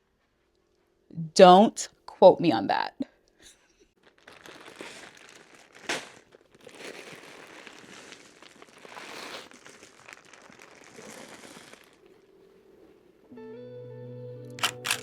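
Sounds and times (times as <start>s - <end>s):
rustling crinkling with clicks: 3.5s - 12.2s, 14.6s - 15.0s.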